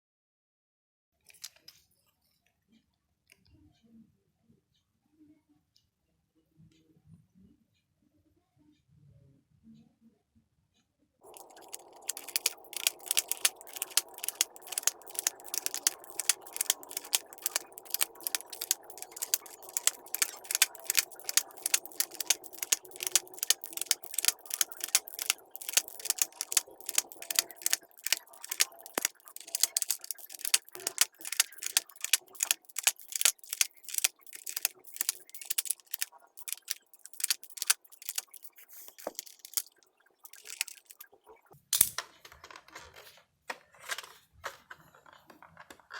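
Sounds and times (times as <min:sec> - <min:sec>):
plastic keyboard parts clicking: 0:11.2 - 0:41.0, 0:41.7 - 0:45.9.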